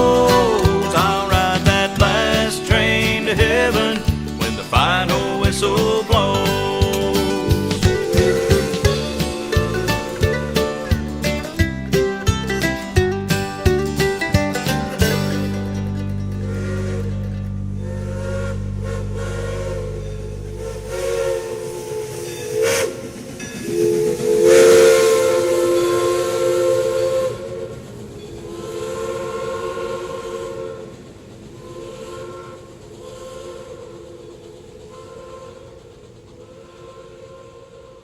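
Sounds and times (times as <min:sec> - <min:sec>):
steam locomotive whistle blasts: 0:00.0 - 0:12.2, 0:16.3 - 0:31.0, 0:31.6 - 0:38.0
steam hiss: 0:00.0 - 0:15.6, 0:16.4 - 0:38.0.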